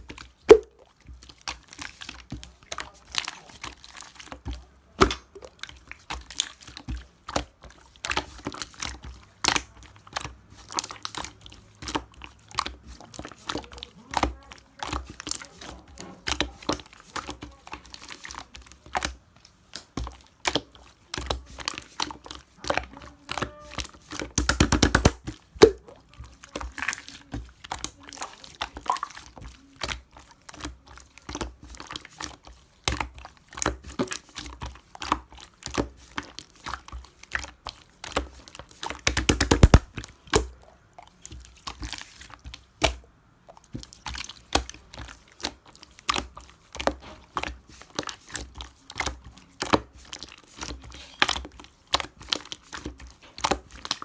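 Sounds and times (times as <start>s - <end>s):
slime crackling: 24.4s - 25.8s, 39.1s - 39.9s
slime clicking and popping: 24.4s - 25.9s, 39.1s - 40.4s.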